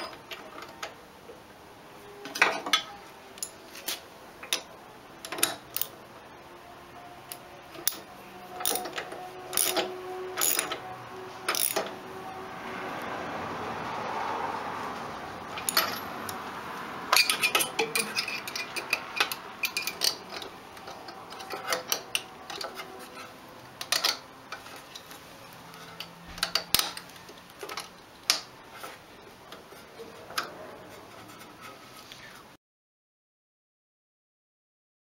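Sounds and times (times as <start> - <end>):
hand tools clicking and clinking: 7.3 - 10.8, 11.5 - 11.9, 15.6 - 16.4, 17.1 - 29.7.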